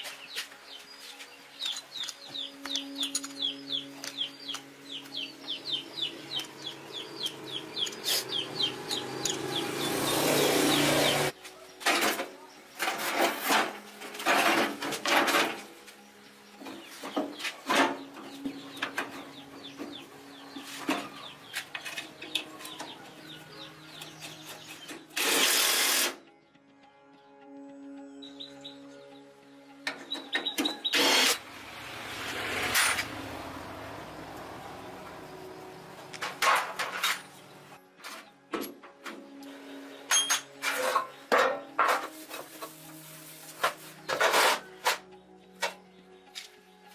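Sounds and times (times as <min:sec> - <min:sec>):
scraping and rubbing strokes: 0:41.8 - 0:45.1.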